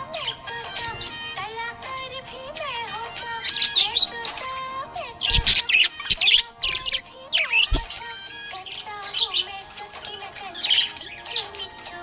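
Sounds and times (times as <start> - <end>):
background music with held tones: 0.0 - 12.0
budgie chirping: 3.2 - 11.9.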